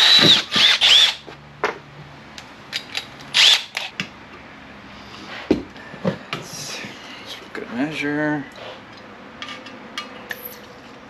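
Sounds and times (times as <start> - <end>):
power drill whining: 0.0 - 1.2.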